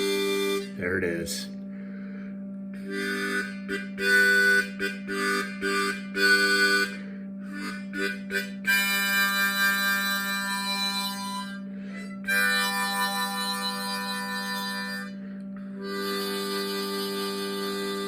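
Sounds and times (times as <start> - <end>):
harmonica chords and notes: 0.0 - 18.0.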